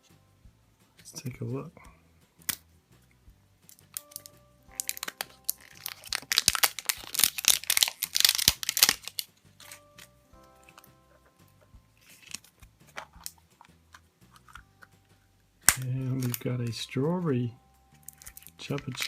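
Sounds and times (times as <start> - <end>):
faint background music: 0.0 - 19.0
wrapper crinkling and tearing: 3.7 - 10.9, 12.0 - 13.4, 15.6 - 16.5, 18.0 - 19.0.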